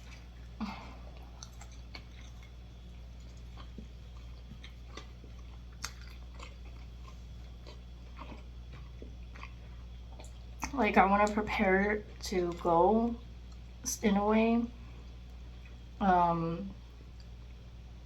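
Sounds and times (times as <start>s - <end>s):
person chewing food: 0.0s - 10.7s
faint low hum: 0.0s - 18.0s.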